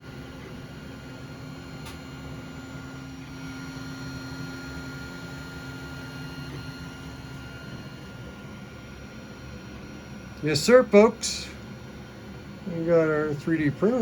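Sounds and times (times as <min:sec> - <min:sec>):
three d printer whine and hum: 0:00.0 - 0:14.0
small click: 0:01.8 - 0:02.0.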